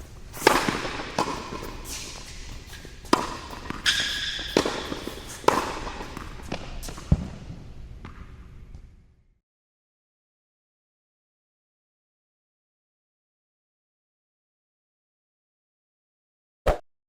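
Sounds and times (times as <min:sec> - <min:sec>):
tennis ball being struck: 0:00.4 - 0:02.0, 0:03.1 - 0:07.2
shoe squeak: 0:01.3 - 0:06.2.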